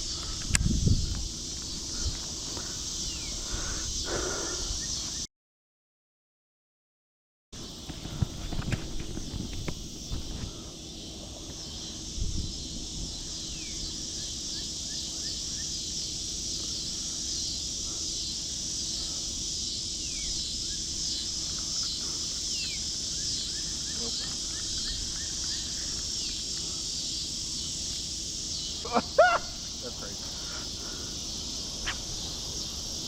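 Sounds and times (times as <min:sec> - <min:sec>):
insects chorus: 0:00.0 - 0:05.3, 0:07.6 - 0:33.0
bird chirps: 0:19.7 - 0:27.7.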